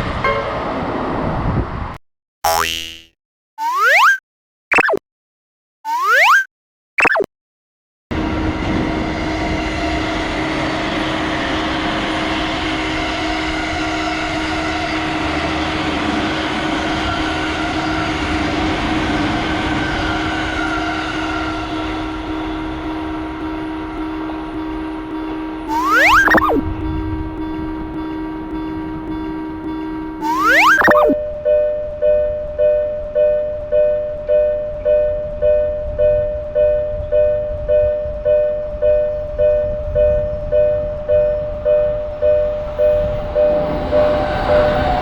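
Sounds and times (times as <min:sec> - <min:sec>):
train running rumble: 0:00.0 - 0:01.9, 0:08.1 - 0:25.8, 0:26.6 - 0:30.2, 0:33.2 - 0:45.0
rising cartoon sound effects: 0:02.5 - 0:05.0, 0:05.9 - 0:07.3, 0:25.7 - 0:26.6, 0:30.2 - 0:31.2.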